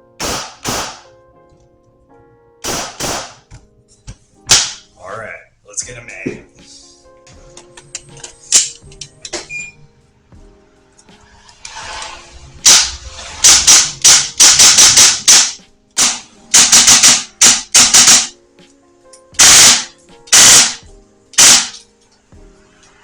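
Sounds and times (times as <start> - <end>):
airsoft gun firing: 0.2 - 1.1, 2.6 - 3.5, 4.5 - 4.8, 12.7 - 18.4, 19.4 - 21.8.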